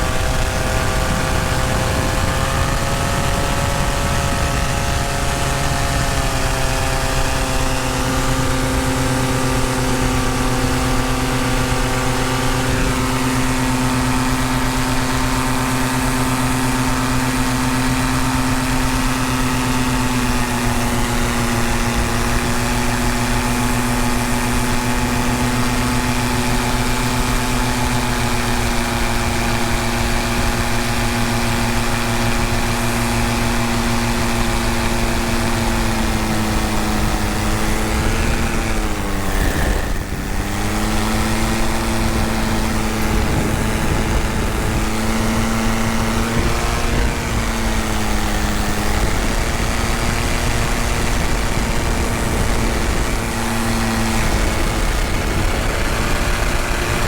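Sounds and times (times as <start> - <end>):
paramotor engine and propeller: 0.0 - 57.0
wind rush: 0.0 - 57.0.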